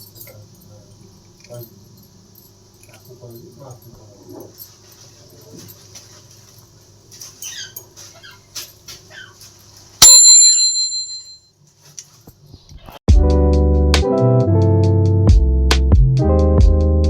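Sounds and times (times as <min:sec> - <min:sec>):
bell ding: 0:10.0 - 0:11.5.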